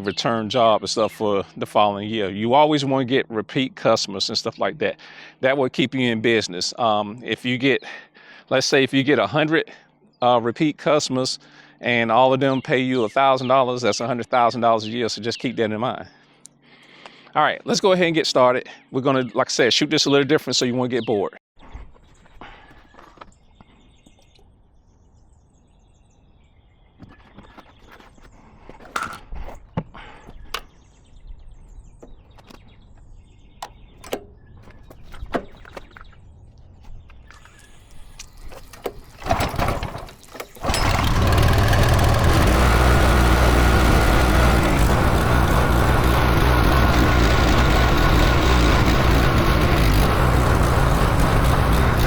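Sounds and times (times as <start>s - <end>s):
pressure washer engine running: 38.8s - 52.0s.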